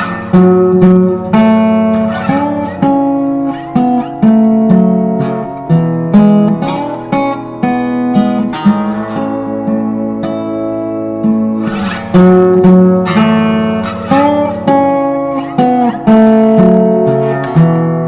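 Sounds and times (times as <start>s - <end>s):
acoustic guitar melody: 0.0s - 18.0s.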